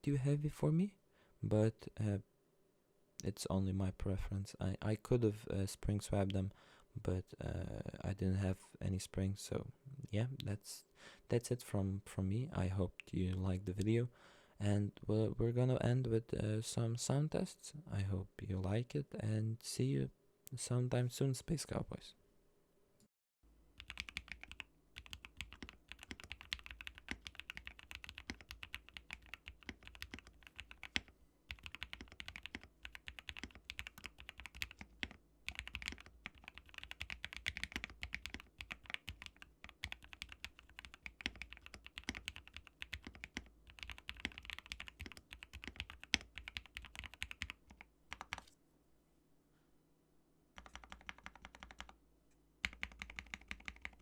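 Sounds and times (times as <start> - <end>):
mechanical keyboard typing: 23.8 - 48.5, 50.6 - 52.0, 52.6 - 54.0.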